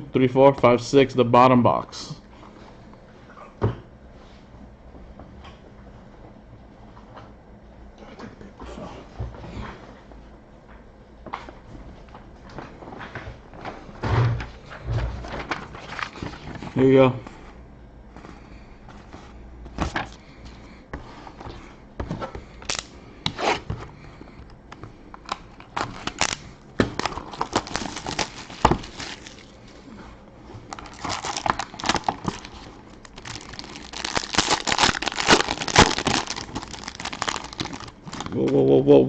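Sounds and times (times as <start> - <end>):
plastic wrapping crinkling: 25.2 - 29.8, 30.6 - 38.5.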